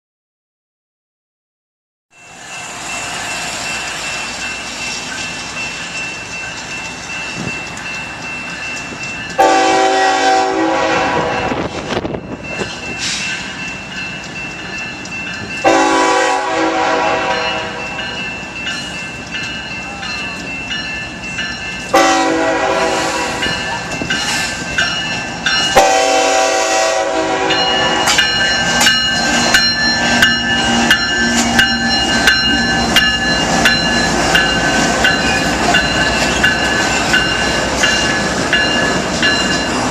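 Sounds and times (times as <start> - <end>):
train horn: 9.4 - 11.8, 15.6 - 17.8, 21.9 - 23.5, 25.8 - 28.2
train wheels clicking over rail joints: 27.5 - 39.9.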